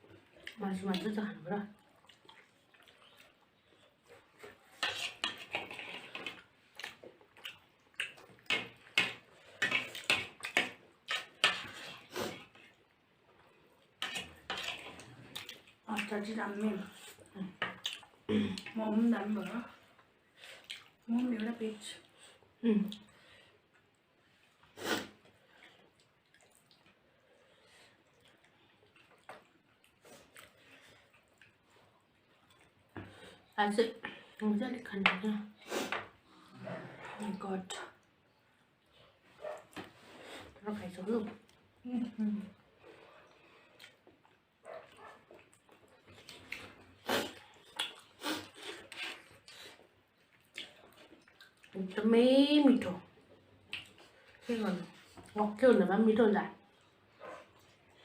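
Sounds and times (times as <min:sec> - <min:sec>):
wet mouth clicks and smacks: 0:17.8 - 0:18.2, 0:45.4 - 0:48.1, 0:53.7 - 0:54.0.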